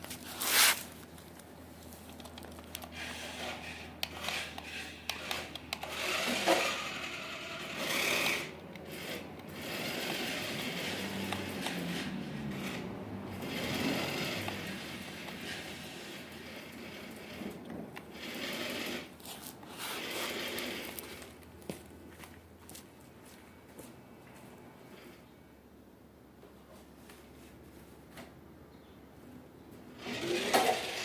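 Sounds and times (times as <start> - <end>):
toy car electric motor whirring: 2.2 - 21.4, 30.0 - 31.0.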